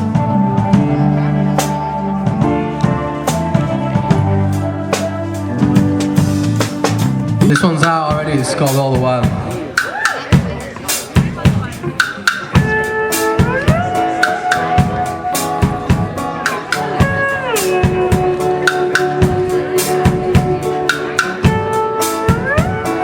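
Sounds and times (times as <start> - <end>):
drum kit steady beat: 0.0 - 23.0
sliding guitar notes: 11.8 - 23.0.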